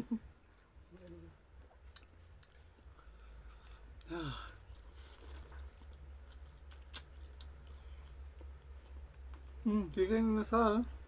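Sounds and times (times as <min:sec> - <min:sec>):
person sighing: 0:04.0 - 0:04.6.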